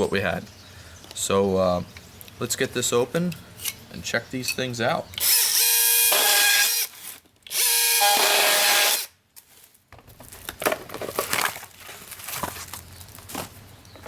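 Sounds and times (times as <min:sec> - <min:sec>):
cordless power tool motor: 0:05.2 - 0:09.1.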